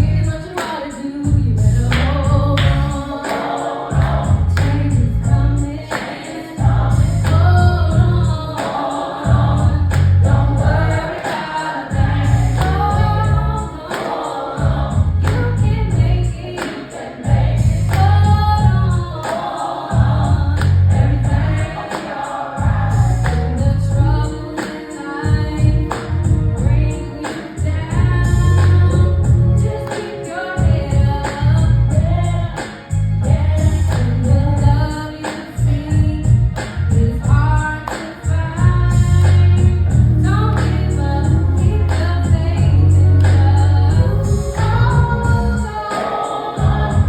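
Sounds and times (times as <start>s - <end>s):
heavy bass beat: 0.0s - 0.5s, 1.2s - 3.2s, 3.9s - 5.8s, 6.6s - 8.5s, 9.2s - 11.3s, 11.9s - 13.8s, 14.6s - 16.5s, 17.2s - 19.2s, 19.9s - 21.9s, 22.6s - 24.4s, 25.2s - 29.9s, 30.6s - 35.0s, 35.6s - 45.7s, 46.6s - 47.0s
gospel singing: 0.0s - 47.0s.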